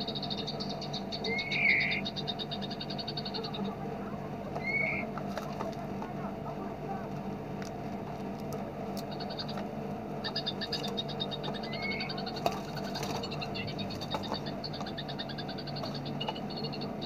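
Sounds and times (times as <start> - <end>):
songbird trilling: 0.0 - 3.9, 4.5 - 5.1, 9.0 - 17.0
steady low hum: 0.0 - 17.0.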